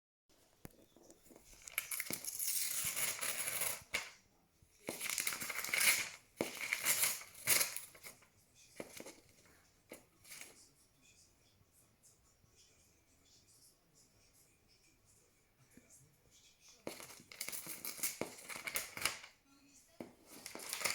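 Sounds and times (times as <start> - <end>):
parrot shredding paper: 4.9 - 8.1, 16.9 - 19.2, 20.2 - 20.9.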